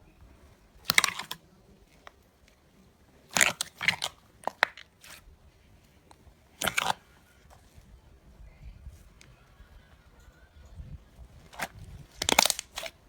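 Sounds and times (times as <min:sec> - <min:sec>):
slime crackling crunches: 0:00.7 - 0:02.2, 0:03.2 - 0:05.2, 0:06.5 - 0:07.2, 0:11.5 - 0:13.0.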